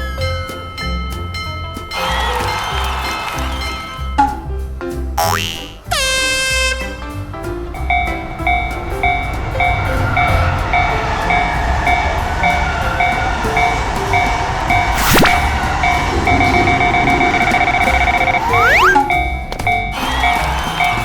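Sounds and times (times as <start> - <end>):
railroad crossing bells ringing: 0.0 - 4.5, 7.9 - 20.0
passing train rumble: 5.8 - 20.9
falling whistle-like tone: 8.1 - 19.3.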